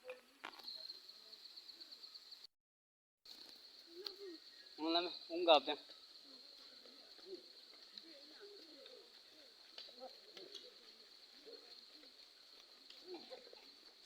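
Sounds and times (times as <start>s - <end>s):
doves cooing: 5.8s - 14.0s.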